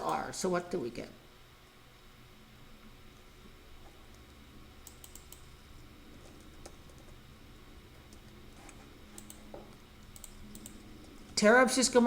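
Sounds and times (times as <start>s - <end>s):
faint typing on computer keyboard: 4.1s - 7.2s, 8.0s - 11.4s.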